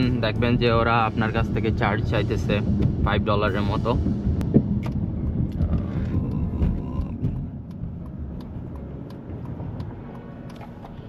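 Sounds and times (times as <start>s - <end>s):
car road and engine rumble: 0.0s - 11.0s.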